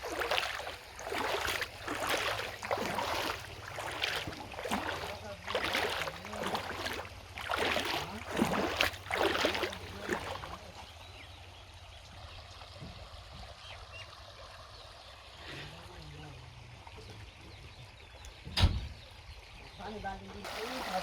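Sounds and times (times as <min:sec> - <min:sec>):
river water splashing: 0:00.0 - 0:13.2, 0:20.4 - 0:21.0.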